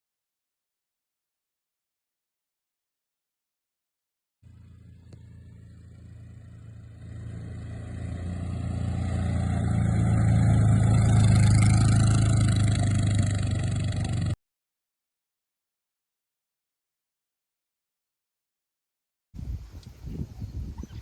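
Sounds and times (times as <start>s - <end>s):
vehicle engine running: 4.4s - 14.4s.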